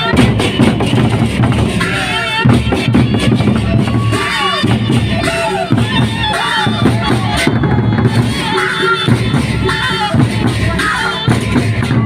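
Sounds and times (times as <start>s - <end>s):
barrel drums beating: 0.0s - 12.0s
cymbals clashing: 0.0s - 12.0s.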